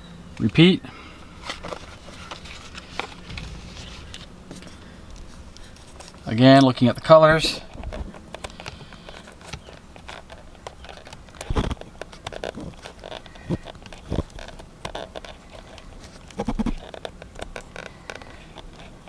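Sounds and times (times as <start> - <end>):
loud thumps: 3.2 - 5.6, 11.5 - 11.8, 16.4 - 16.8
clicks and knocks of plastic connectors: 7.7 - 19.0.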